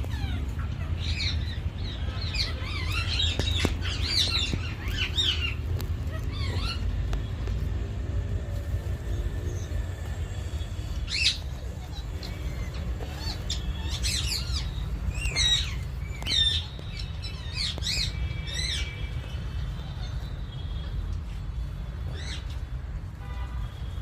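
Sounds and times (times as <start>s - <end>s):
parrot squawking: 0.0s - 7.0s, 10.9s - 19.0s.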